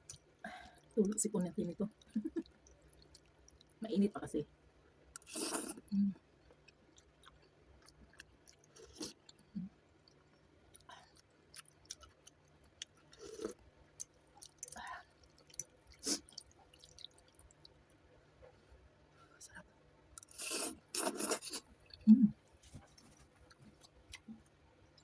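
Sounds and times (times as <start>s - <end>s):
person chewing noodles: 2.0s - 3.8s, 5.2s - 17.9s, 20.2s - 22.1s.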